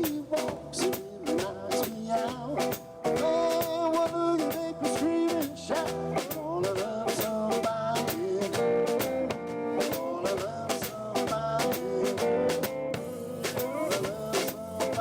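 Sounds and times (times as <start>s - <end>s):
drums keeping a steady beat: 0.0s - 15.0s
jazz trio playing swing: 0.4s - 15.0s
melodic lead line: 11.9s - 15.0s.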